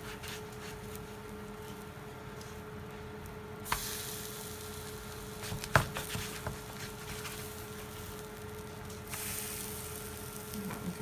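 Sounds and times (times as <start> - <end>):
patties sizzling in a pan: 3.6 - 11.0.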